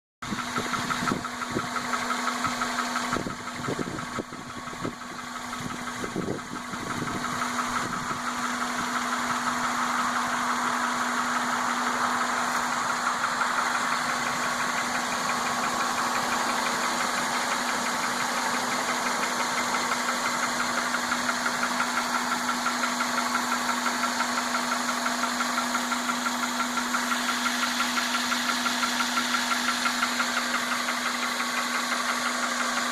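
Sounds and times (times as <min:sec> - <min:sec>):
car engine idling with ticking: 0:00.2 - 0:32.9.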